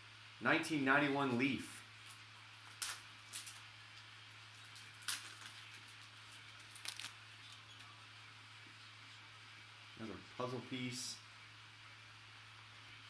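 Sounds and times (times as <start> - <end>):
cards flipped by hand: 6.6 - 7.2.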